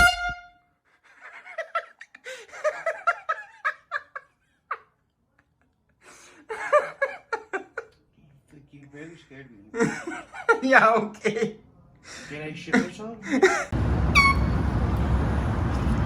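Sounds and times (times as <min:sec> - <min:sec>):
air horn blast: 0:00.0 - 0:00.6, 0:14.0 - 0:15.0
people laughing: 0:01.0 - 0:08.0, 0:09.7 - 0:13.8.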